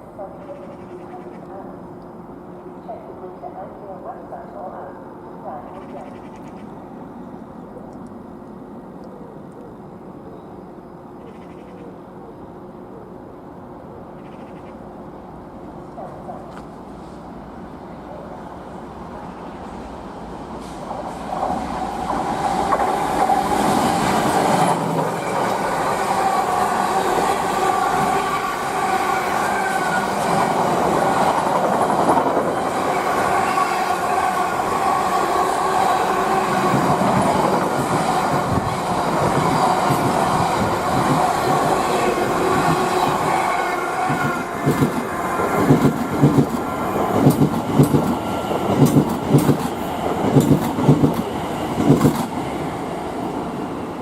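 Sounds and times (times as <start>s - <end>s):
freight train rushing past: 16.7s - 54.0s
wheels clickety-clack over joints: 44.1s - 45.0s, 45.6s - 52.4s.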